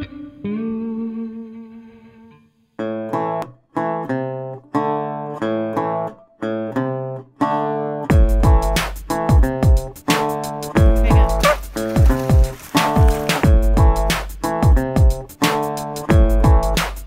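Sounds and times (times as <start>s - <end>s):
strummed guitar chords: 2.8s - 17.0s
drums: 8.1s - 17.0s.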